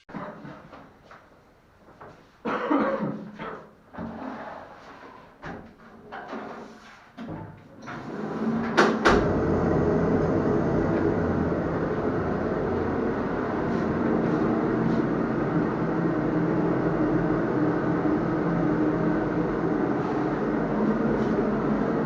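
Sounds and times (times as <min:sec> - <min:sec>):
machine humming: 0:07.8 - 0:22.0.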